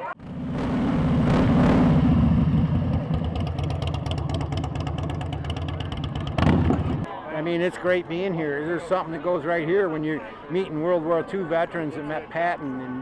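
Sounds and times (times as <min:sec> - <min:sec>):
motorcycle engine revving: 0:00.2 - 0:07.1.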